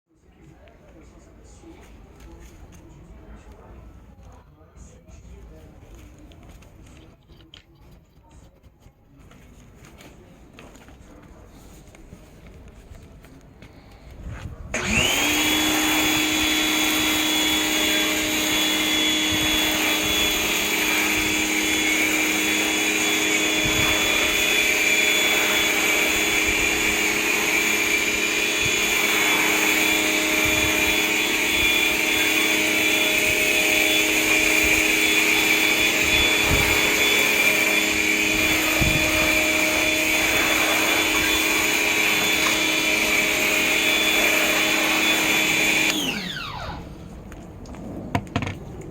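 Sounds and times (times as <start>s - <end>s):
pressure washer motor whining: 14.7s - 47.4s.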